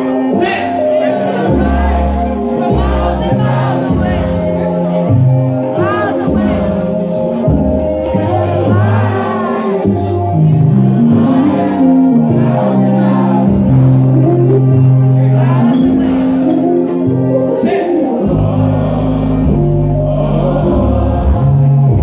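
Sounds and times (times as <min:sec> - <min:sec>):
keyboard chords: 0:00.0 - 0:22.0
deep bass: 0:01.4 - 0:22.0
man singing: 0:11.0 - 0:22.0.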